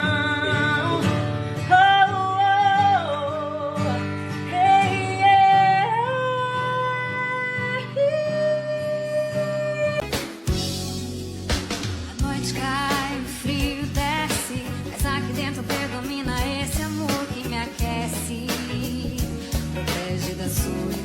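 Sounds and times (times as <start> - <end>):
song with sliding vocal notes: 9.3 - 21.0.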